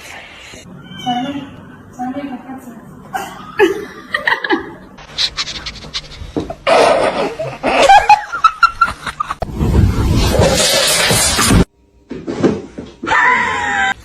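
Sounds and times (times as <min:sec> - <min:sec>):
person laughing: 0:03.2 - 0:09.4.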